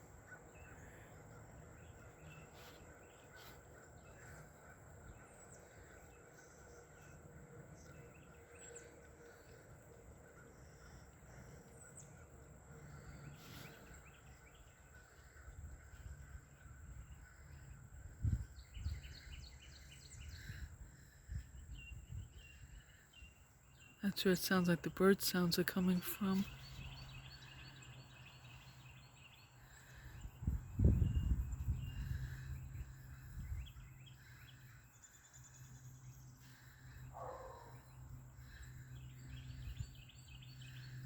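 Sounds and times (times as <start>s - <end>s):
bird chirps: 25.8s - 41.0s.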